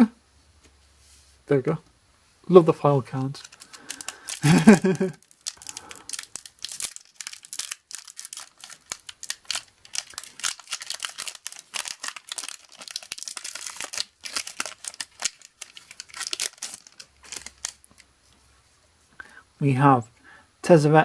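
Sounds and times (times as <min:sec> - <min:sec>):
foil wrapper tearing and crinkling: 0:03.1 - 0:18.0
foil wrapper crinkling: 0:03.1 - 0:18.1.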